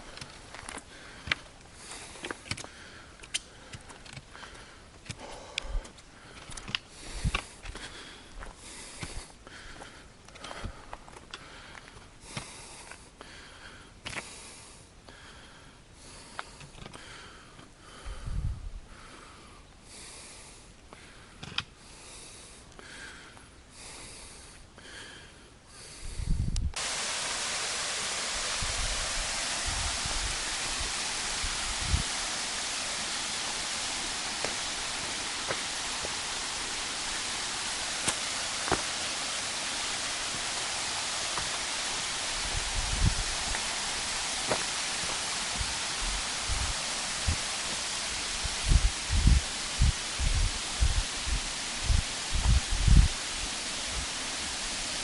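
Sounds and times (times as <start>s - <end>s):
waterfall rushing: 0.0s - 2.2s, 26.8s - 55.0s.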